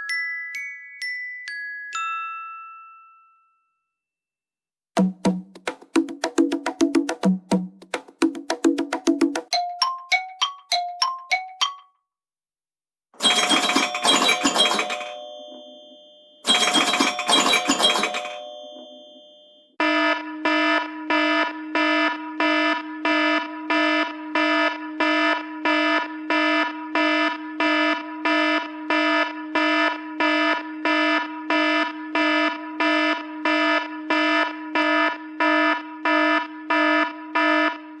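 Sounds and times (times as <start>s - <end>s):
buzzy electronic ringtone pulsing: 13.2s - 19.5s.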